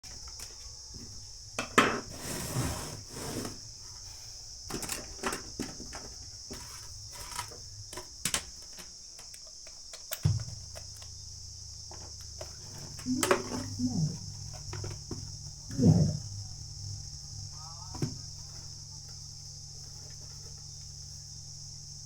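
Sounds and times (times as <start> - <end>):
crickets chirring: 0.0 - 22.0
low steady hum: 10.4 - 22.0.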